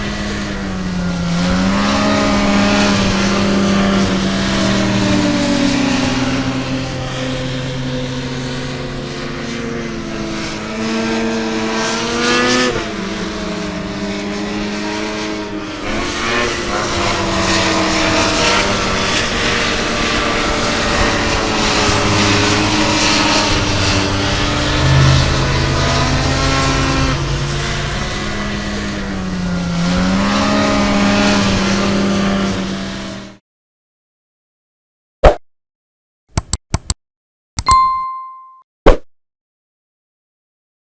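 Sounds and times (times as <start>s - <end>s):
snowmobile engine revving: 0.0s - 33.4s.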